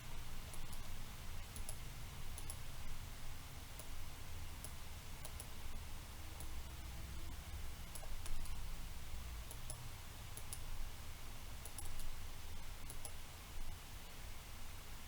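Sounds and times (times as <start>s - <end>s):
low steady hum: 0.0s - 15.0s
computer mouse clicks: 0.5s - 0.9s, 1.5s - 2.6s, 3.8s - 4.0s, 4.6s - 5.6s, 7.9s - 8.6s, 9.5s - 9.8s, 10.4s - 10.7s, 11.6s - 12.2s, 12.8s - 13.2s.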